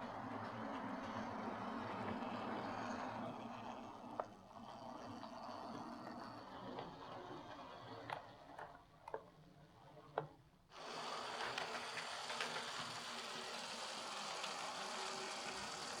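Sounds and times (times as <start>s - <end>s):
model train motor whirr: 10.7s - 16.0s.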